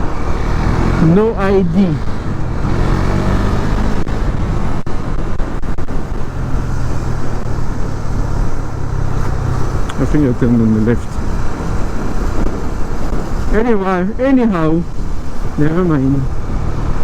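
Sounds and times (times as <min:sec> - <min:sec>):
motorcycle engine running: 0:00.0 - 0:13.4
wind and road noise: 0:00.0 - 0:17.0.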